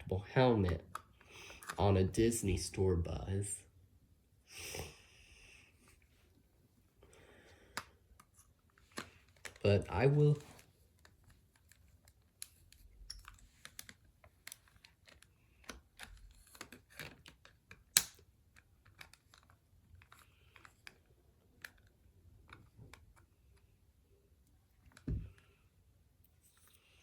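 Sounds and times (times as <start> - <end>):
plastic toy parts clicking: 11.0 - 21.0.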